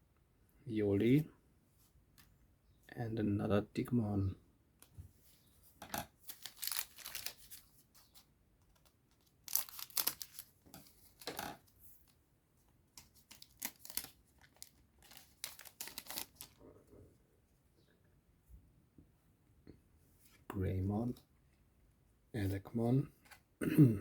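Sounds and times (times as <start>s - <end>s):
foil pack ripping and crinkling: 6.2s - 7.6s, 9.4s - 10.5s, 13.2s - 16.6s.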